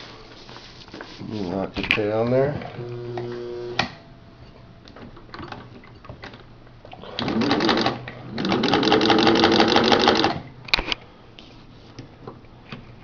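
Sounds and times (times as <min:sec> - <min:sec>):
sewing machine running: 0:07.2 - 0:10.4.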